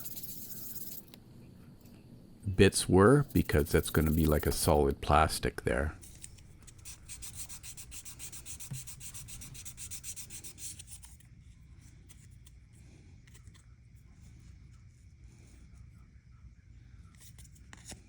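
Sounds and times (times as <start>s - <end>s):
hand tool rubbing plastic: 3.2s - 4.8s.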